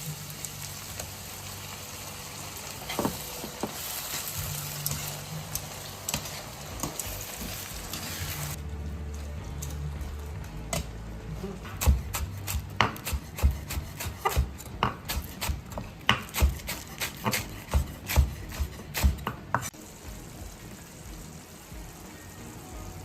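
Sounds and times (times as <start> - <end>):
knife chopping on wooden board: 11.6 - 19.7.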